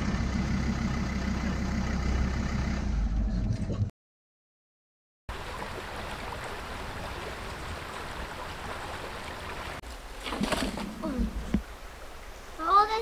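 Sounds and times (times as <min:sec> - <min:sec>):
creek water running: 0:05.3 - 0:13.0.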